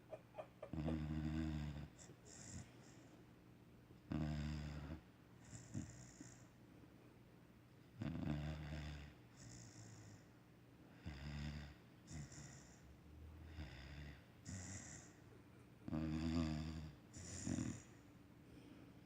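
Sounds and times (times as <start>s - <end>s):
puppy snoring: 0.1s - 3.1s, 4.1s - 6.6s, 8.0s - 10.3s, 11.0s - 15.2s, 15.8s - 18.0s.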